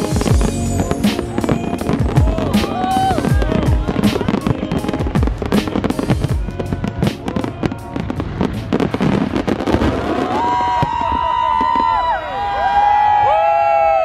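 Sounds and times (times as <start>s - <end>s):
music playing: 0.0s - 9.8s
fireworks bangs and crackling: 0.0s - 13.5s.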